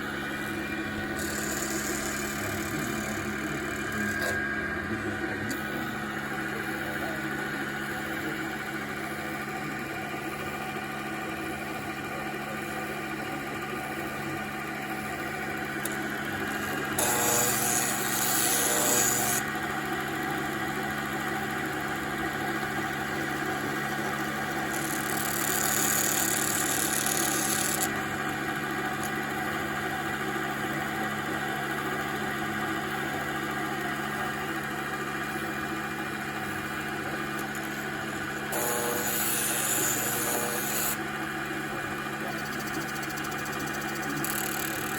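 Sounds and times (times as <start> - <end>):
lathe motor hum: 0.0 - 44.9
cutting tool scraping wood: 1.0 - 4.6, 15.8 - 19.5, 24.8 - 28.0, 37.4 - 41.0, 42.4 - 44.9.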